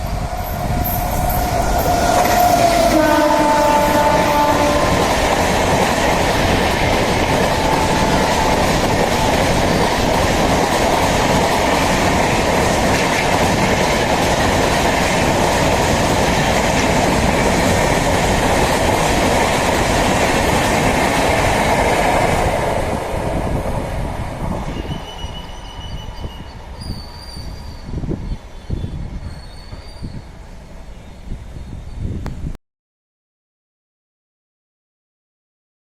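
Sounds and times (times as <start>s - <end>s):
train wheels rumbling on track: 0.0s - 31.7s
two-tone locomotive horn: 0.4s - 5.4s, 7.5s - 9.0s.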